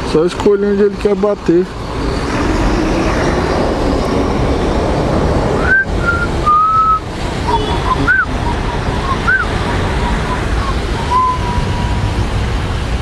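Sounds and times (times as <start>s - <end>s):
wind and road rush: 0.0s - 13.0s
person whistling: 5.6s - 9.5s, 10.3s - 12.0s.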